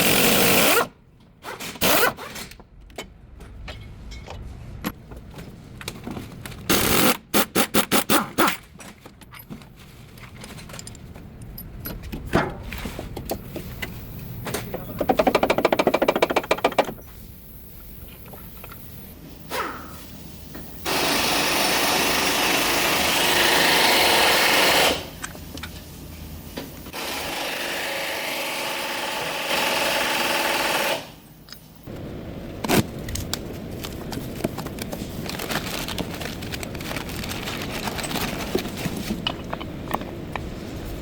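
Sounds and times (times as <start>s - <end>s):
power tool running: 20.9s - 25.0s.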